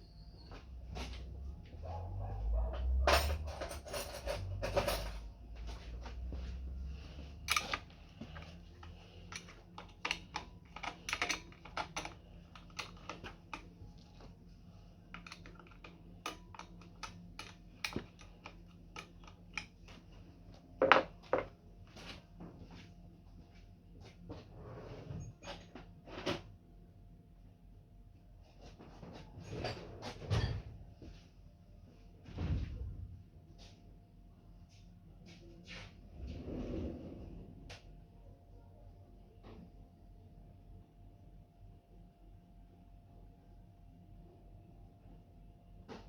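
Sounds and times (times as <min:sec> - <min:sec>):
tools tapping on metal parts: 0:07.4 - 0:13.7, 0:15.2 - 0:19.7.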